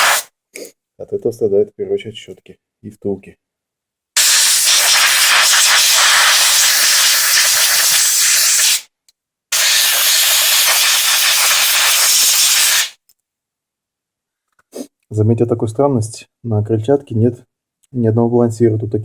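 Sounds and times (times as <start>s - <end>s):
compressed air blow gun hissing: 0.0s - 0.3s, 4.2s - 8.8s, 9.5s - 13.0s.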